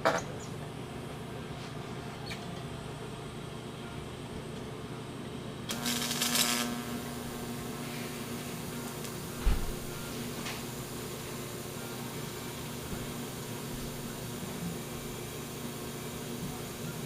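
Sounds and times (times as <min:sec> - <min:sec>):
steady hum: 0:00.0 - 0:17.0
hissing crackling burst: 0:05.7 - 0:14.3.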